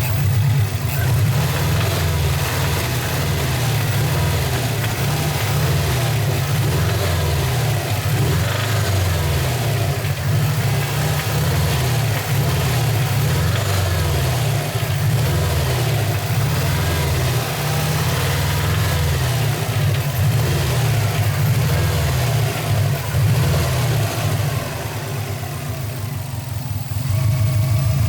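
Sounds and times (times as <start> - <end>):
car engine running: 0.0 - 28.0
engine rattle or knocking: 0.0 - 28.0.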